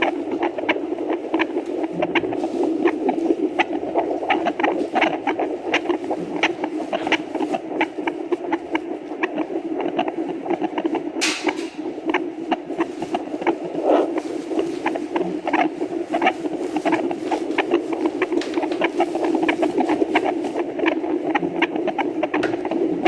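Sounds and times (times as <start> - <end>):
doppler heartbeat whooshing: 0.0 - 23.0.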